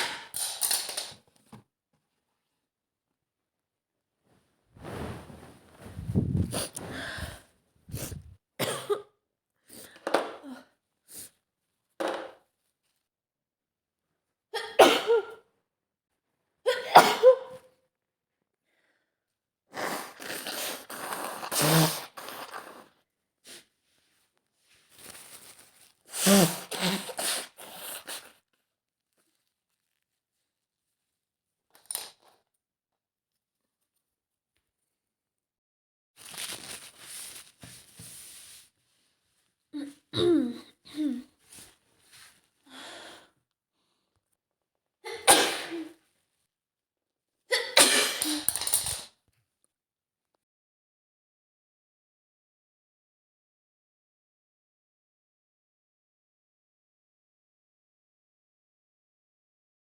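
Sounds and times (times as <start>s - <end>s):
woman sniffling: 6.5s - 8.3s, 26.1s - 28.2s.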